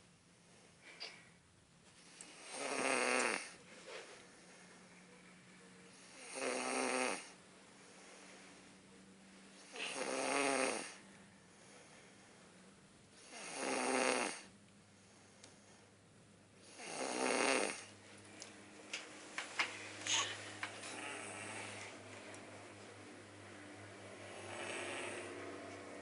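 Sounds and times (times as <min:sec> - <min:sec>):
loud snoring: 0:02.2 - 0:03.6, 0:05.9 - 0:07.4, 0:09.6 - 0:11.0, 0:13.2 - 0:14.5, 0:16.6 - 0:17.9, 0:21.0 - 0:22.0, 0:24.2 - 0:25.7.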